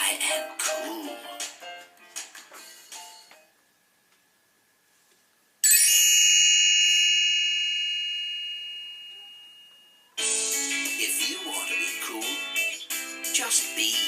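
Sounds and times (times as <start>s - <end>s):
bright bell chime: 5.6s - 10.5s.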